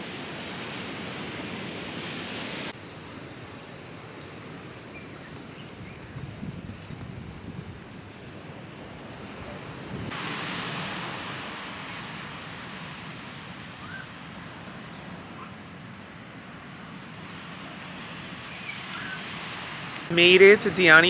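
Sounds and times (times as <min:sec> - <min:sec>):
ocean surf: 0:00.0 - 0:05.5, 0:08.4 - 0:21.0
wind noise: 0:05.8 - 0:10.2.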